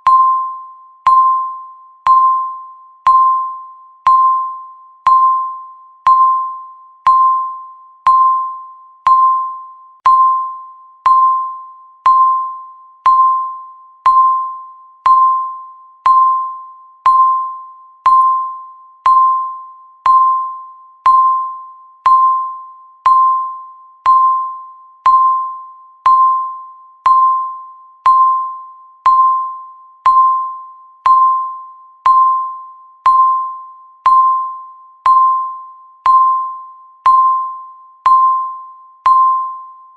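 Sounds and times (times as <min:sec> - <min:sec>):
bell-like electronic beeps: 0:00.0 - 0:39.9.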